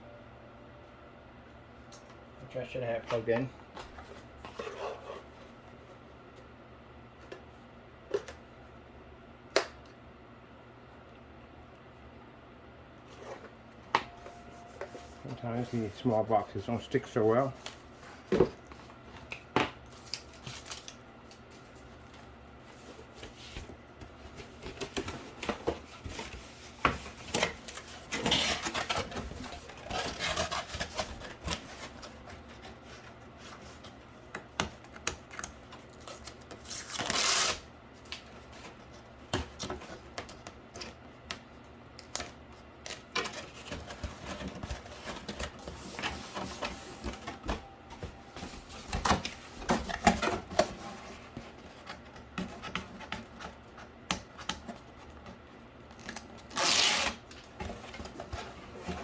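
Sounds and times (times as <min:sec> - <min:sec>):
cardboard rustle: 0:21.5 - 0:34.1, 0:43.0 - 0:53.9, 0:56.0 - 0:59.0.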